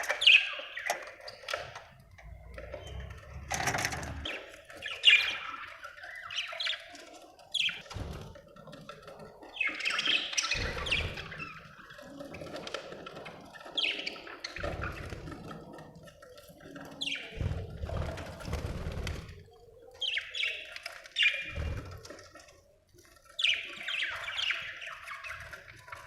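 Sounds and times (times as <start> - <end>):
budgerigars chirping and squawking: 4.1 - 7.8, 9.5 - 12.0, 23.4 - 25.7.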